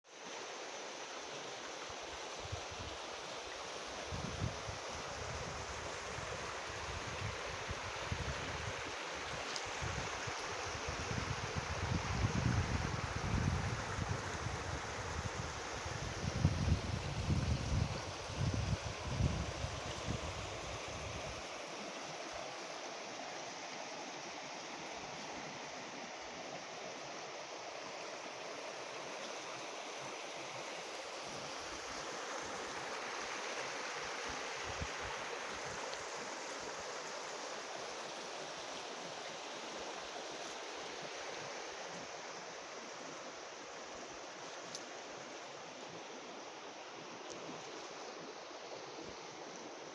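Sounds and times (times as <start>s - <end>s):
wind rumble on microphone: 9.8s - 21.4s.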